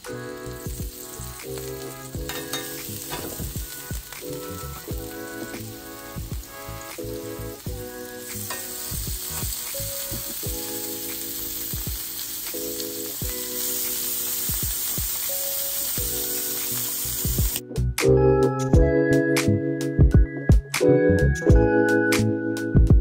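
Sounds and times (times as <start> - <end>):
octopus sizzling on a grill: 0.0 - 17.6.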